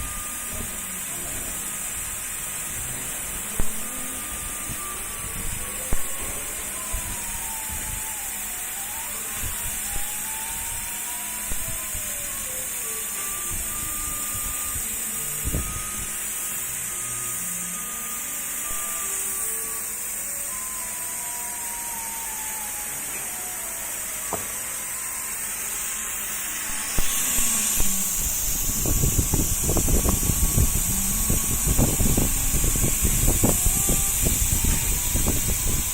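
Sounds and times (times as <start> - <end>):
laser cutter motors whining: 0.0 - 35.9
steady hiss: 0.0 - 35.9
loud rough noise: 26.6 - 35.9.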